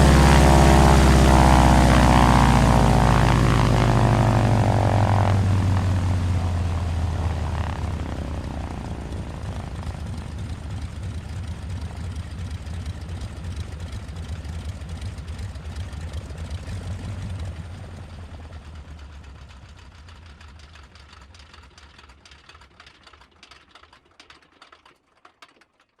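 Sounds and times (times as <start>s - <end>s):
helicopter engine winding down: 0.0s - 17.4s
helicopter rotor blade beats slowing: 0.0s - 18.7s.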